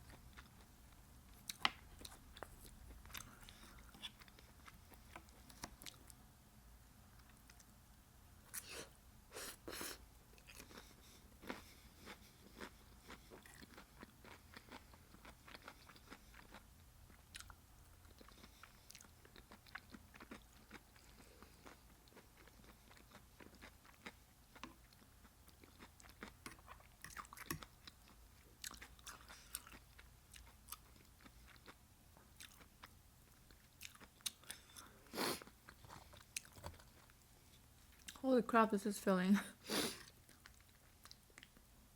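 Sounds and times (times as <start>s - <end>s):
chewing and biting: 10.4s - 31.8s, 33.5s - 34.9s.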